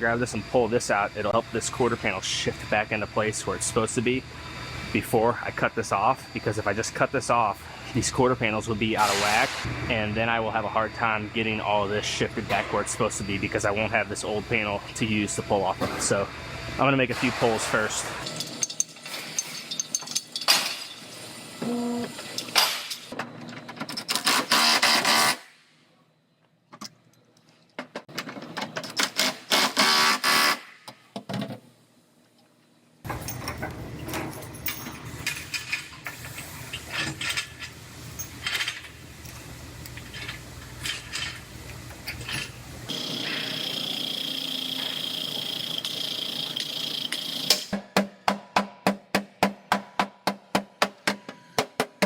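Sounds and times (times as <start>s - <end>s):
high whine: 0.0s - 18.1s
low mechanical hum: 0.0s - 47.8s.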